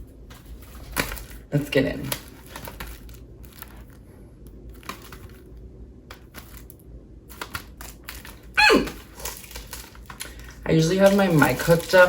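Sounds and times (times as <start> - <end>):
packaging crinkling: 0.2 - 12.0
packaging clicks: 6.1 - 12.0.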